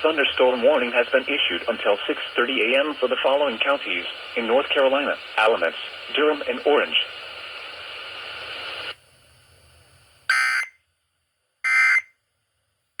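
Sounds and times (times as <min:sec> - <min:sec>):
steady hiss: 0:00.0 - 0:10.3.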